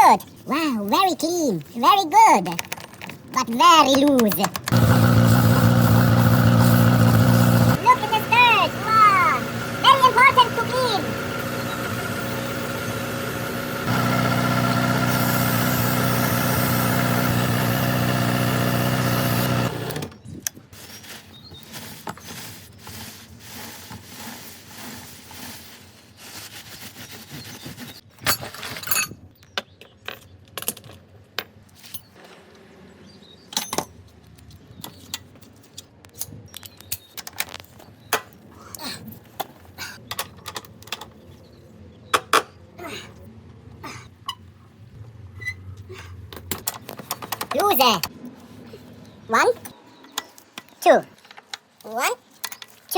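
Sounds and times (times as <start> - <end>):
hand tools clicking and knocking: 2.4 - 4.9, 46.4 - 48.1
motorcycle engine running: 4.6 - 20.0.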